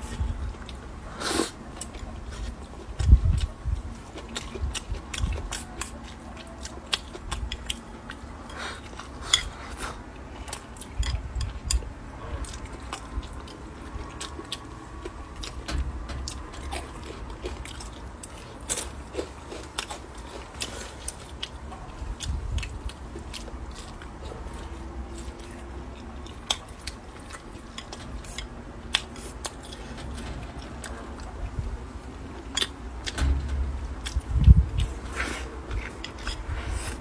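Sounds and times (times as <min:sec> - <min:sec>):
person chewing and crunching food: 0:00.0 - 0:31.6, 0:32.4 - 0:37.0
dull low thumps: 0:33.1 - 0:35.1.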